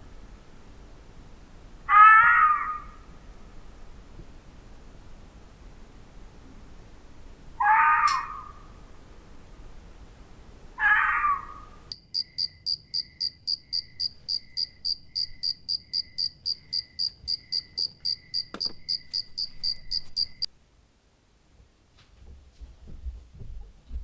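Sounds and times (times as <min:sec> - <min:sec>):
cat meowing: 0:01.9 - 0:03.1, 0:07.6 - 0:08.8, 0:10.8 - 0:11.8
crickets chirping: 0:11.9 - 0:20.5.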